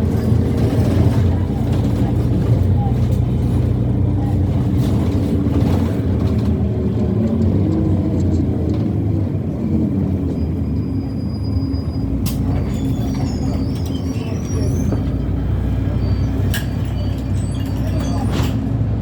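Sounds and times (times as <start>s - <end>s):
bus engine drone: 0.0s - 19.0s.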